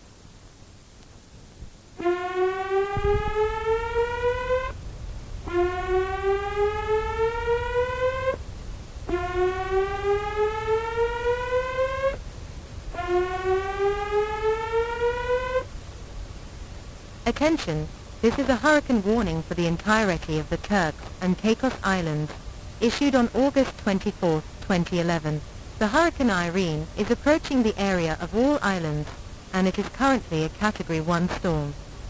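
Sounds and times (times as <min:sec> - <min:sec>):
rising electronic alert siren: 0:02.1 - 0:04.8, 0:09.2 - 0:12.2.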